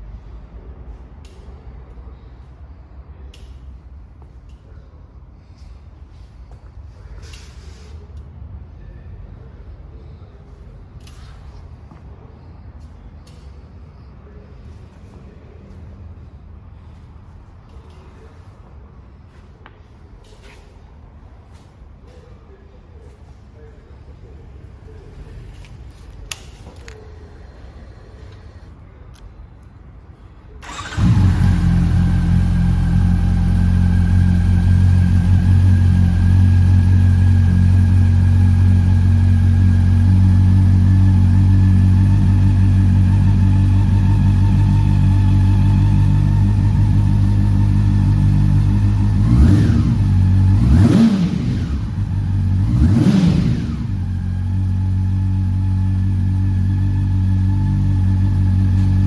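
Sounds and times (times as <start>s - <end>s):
motorcycle engine idling and revving: 30.6s - 59.0s.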